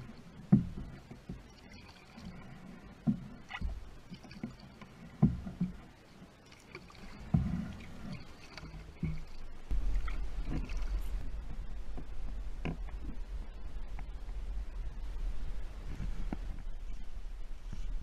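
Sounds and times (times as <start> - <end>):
light water noise: 0.0 - 18.0
steady low rumble: 9.0 - 18.0.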